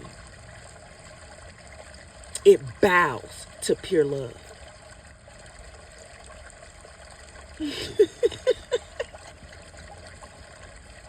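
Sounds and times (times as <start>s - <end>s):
woman laughing: 7.6s - 9.1s.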